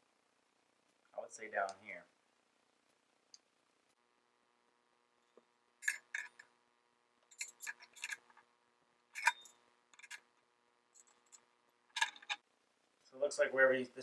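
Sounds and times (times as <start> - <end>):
metal hardware clinking: 5.8 - 6.4, 7.3 - 8.4, 9.2 - 10.3, 11.0 - 12.4.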